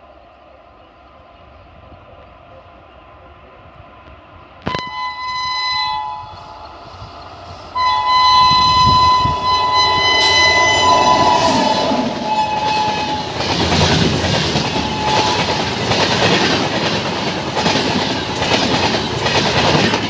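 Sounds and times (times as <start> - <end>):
approaching train noise: 0.0 - 20.0
locomotive horn: 4.6 - 6.7, 7.8 - 13.8, 14.4 - 15.8.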